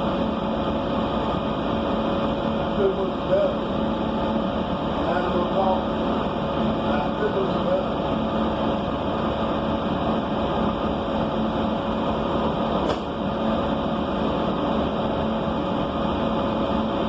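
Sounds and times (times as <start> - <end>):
bus engine and ventilation hum: 0.0 - 17.0
short click: 12.9 - 13.1.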